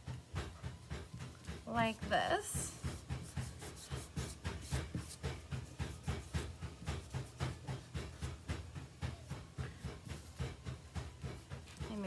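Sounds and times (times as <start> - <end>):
rapid panting: 0.3 - 12.0.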